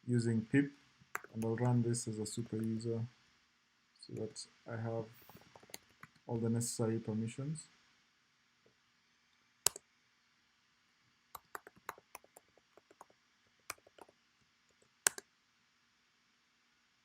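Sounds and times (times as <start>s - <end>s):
typing on a computer keyboard: 5.3s - 6.2s, 11.4s - 13.1s, 13.7s - 14.1s.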